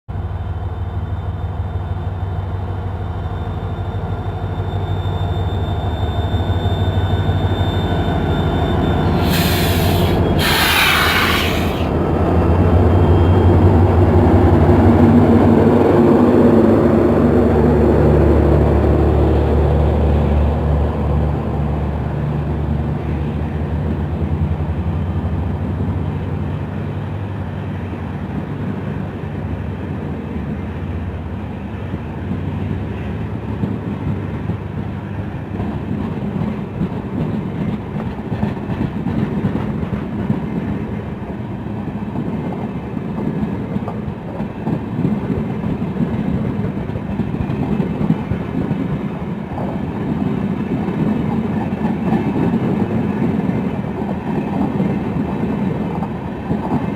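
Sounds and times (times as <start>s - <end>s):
train rumbling on rails: 0.1s - 56.9s
locomotive engine drone: 0.4s - 26.9s.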